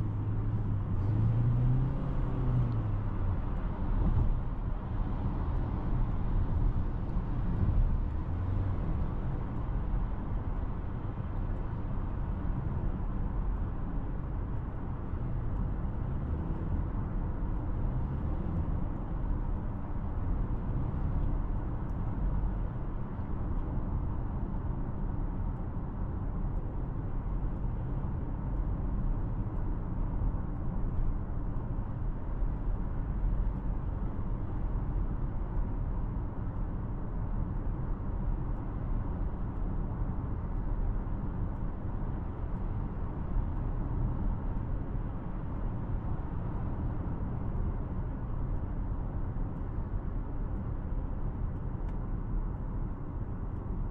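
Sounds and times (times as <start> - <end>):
road and tyre rumble: 0.0 - 53.9.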